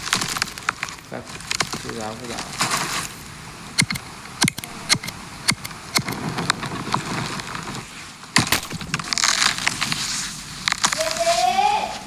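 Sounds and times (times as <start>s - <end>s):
noisy rustling burst: 0.0s - 12.0s
sharp knocks or clicks: 3.8s - 6.6s.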